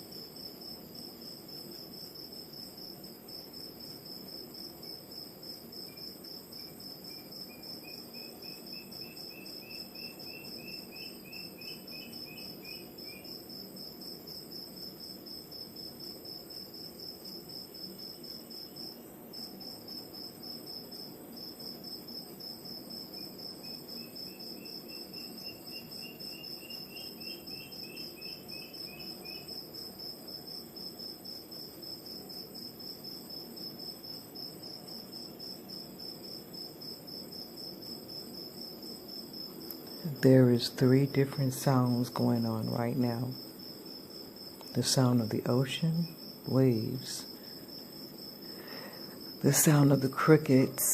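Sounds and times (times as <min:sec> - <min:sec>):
crickets chirping: 0:00.0 - 0:50.9
night bird calling: 0:07.1 - 0:13.3, 0:23.6 - 0:29.5.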